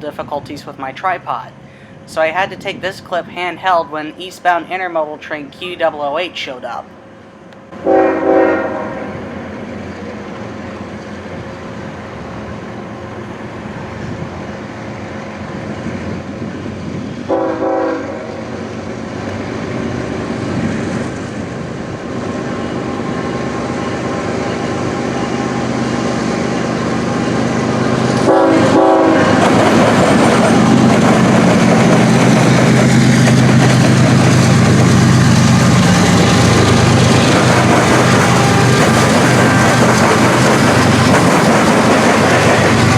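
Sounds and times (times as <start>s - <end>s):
train engine and rail noise: 0.0s - 42.9s
train air horn blasts: 7.8s - 9.2s, 17.3s - 18.4s, 28.2s - 29.4s.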